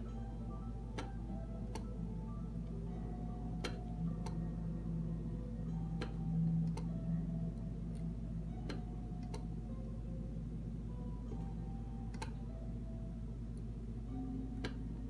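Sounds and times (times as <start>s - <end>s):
steady low hum: 0.0s - 15.0s
soldering clicks and taps: 8.7s - 9.5s, 12.1s - 12.4s.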